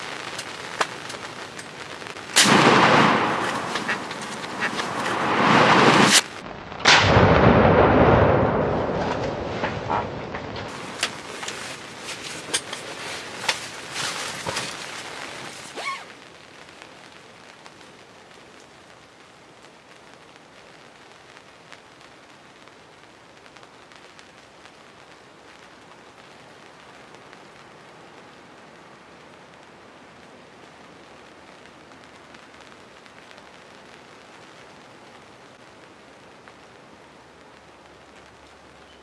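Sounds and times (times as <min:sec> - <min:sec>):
rain pattering: 0:00.0 - 0:39.0.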